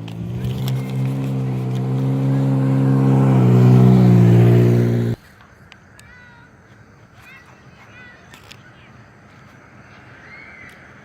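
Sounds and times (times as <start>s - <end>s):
car engine approaching: 0.0s - 5.2s.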